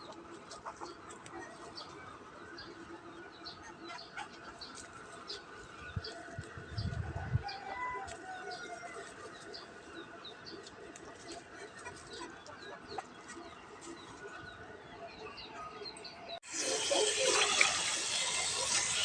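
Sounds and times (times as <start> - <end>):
chickens clucking: 0.0 - 14.4.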